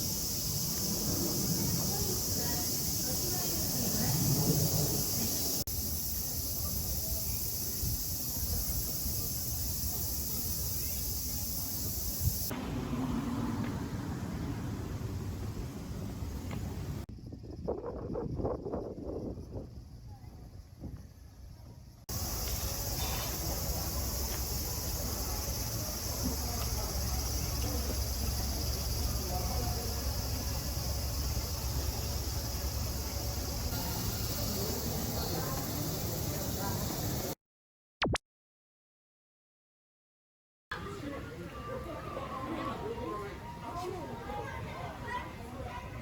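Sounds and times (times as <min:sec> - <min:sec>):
high-pitched insect drone: 0:00.0 - 0:12.5, 0:22.1 - 0:37.4
cicadas buzzing: 0:00.0 - 0:21.5, 0:22.1 - 0:37.4.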